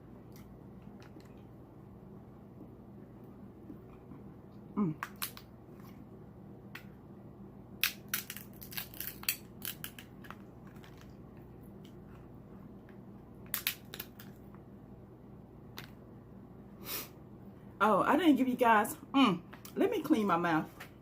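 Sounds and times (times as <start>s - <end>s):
crab legs crackling while eaten: 4.0s - 6.0s, 7.8s - 12.3s, 12.9s - 14.6s.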